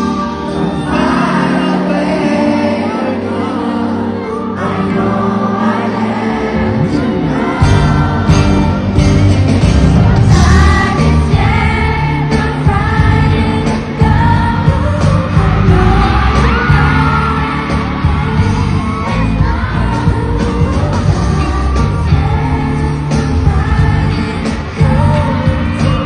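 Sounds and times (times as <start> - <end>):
person singing over sound system: 0.0 - 26.0
heavy bass and drum beat: 7.6 - 26.0.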